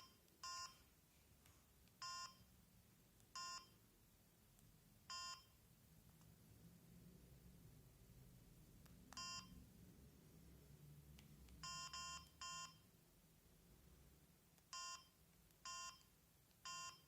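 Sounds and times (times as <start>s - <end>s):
mobile phone keypad beeps: 0.0s - 0.8s, 2.0s - 2.5s, 3.4s - 3.8s, 5.1s - 5.6s, 9.1s - 9.6s, 11.6s - 12.9s, 14.7s - 17.0s.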